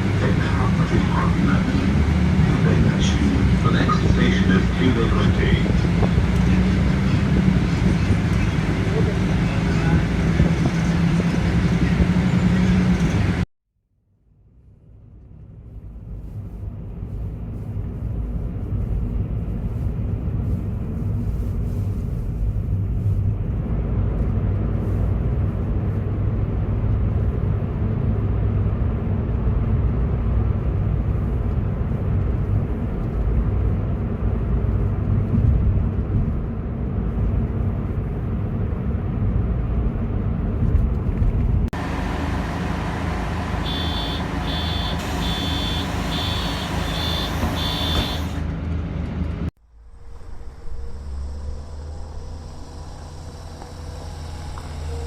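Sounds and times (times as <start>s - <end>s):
bus rumbling from inside: 0.0s - 13.5s, 14.5s - 55.0s
short high electronic beep: 43.6s - 48.4s.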